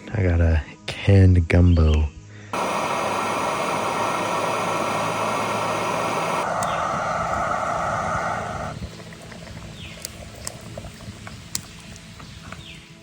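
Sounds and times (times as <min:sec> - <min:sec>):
gas camp stove burner hissing: 0:02.6 - 0:12.7.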